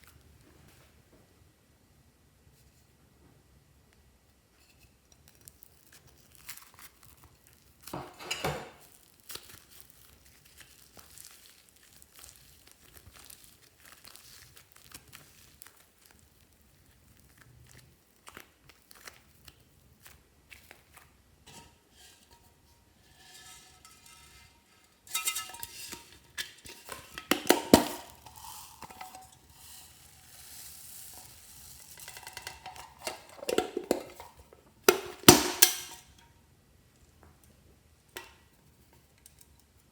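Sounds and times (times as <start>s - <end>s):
slime squished by hand: 8.8s - 21.2s.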